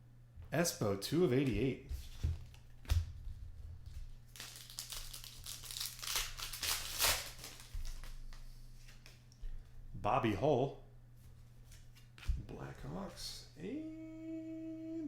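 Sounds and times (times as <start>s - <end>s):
plastic packaging crinkling: 4.2s - 8.2s.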